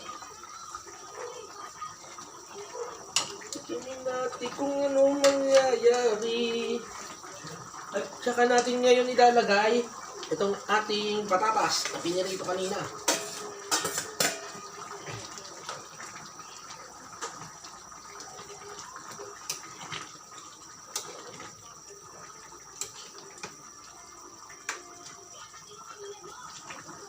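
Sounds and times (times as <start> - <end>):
stew bubbling in a pot: 0.0 - 27.0.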